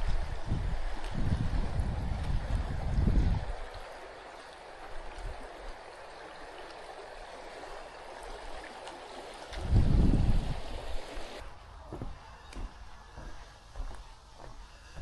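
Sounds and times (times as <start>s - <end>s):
river water rushing: 0.0s - 11.5s.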